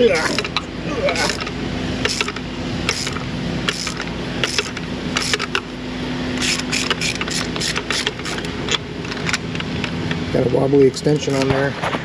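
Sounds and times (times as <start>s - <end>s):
steady hum: 0.0s - 12.0s
hand ratchet clicking: 1.2s - 5.6s, 6.4s - 9.6s.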